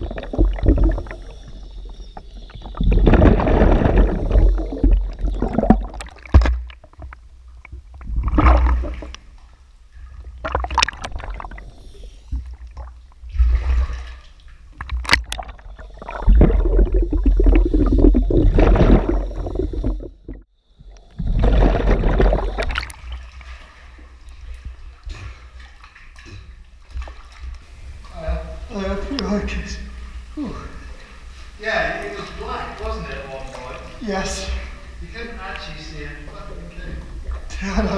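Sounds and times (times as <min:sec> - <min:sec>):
water gurgling and sloshing: 0:00.0 - 0:37.9
low rumble: 0:15.7 - 0:20.5.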